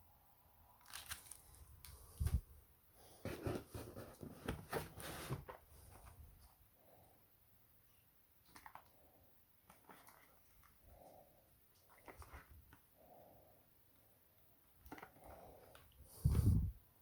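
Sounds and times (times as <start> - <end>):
packaging rustling and clicking: 0.8 - 2.4.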